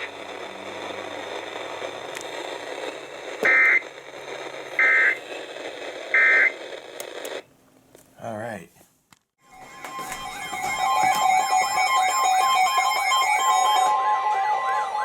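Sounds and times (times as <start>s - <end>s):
radio static: 0.0s - 7.5s
shrill data tone bursts: 9.4s - 15.0s.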